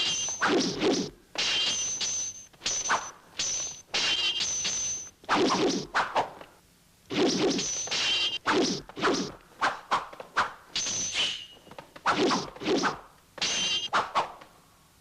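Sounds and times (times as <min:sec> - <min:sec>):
fight whooshes and whacks: 0:05.2 - 0:06.4, 0:07.1 - 0:10.6, 0:12.0 - 0:14.4.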